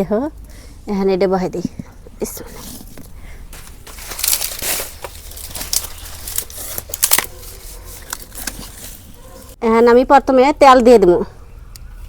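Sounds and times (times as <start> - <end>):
rustling and crinkling: 1.6 - 9.6.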